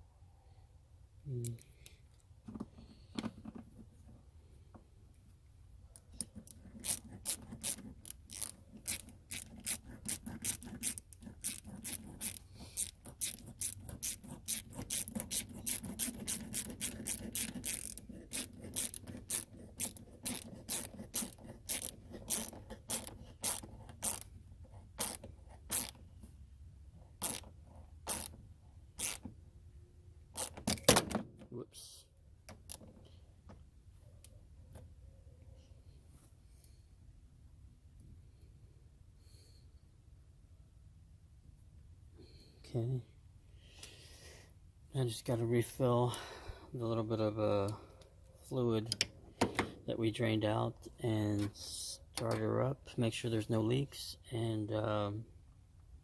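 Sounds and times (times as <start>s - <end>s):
hand ratchet clicking: 6.2s - 24.3s, 25.0s - 26.0s, 27.2s - 28.4s, 29.0s - 29.3s, 30.4s - 30.9s.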